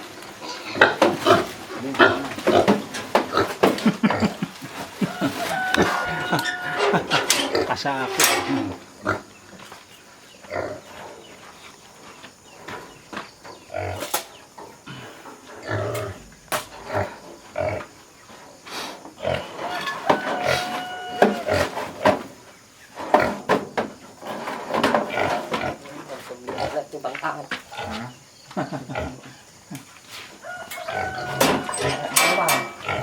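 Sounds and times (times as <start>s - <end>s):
pigs grunting: 0.0s - 9.5s, 10.4s - 11.4s, 13.6s - 18.0s, 18.7s - 22.3s, 24.3s - 27.0s, 27.6s - 29.8s, 30.8s - 33.0s
pig crying high-pitched: 5.2s - 7.3s, 19.6s - 21.7s.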